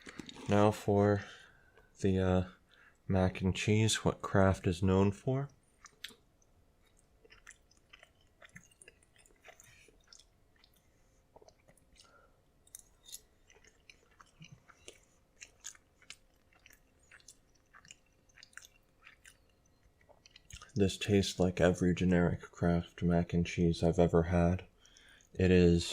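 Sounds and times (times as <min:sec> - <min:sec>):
chewing soft food: 0:05.1 - 0:21.4, 0:24.6 - 0:25.4.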